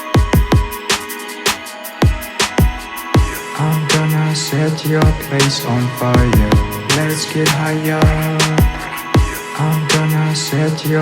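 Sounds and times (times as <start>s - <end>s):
electronic music: 0.0s - 11.0s
booming kick drums: 6.2s - 7.2s.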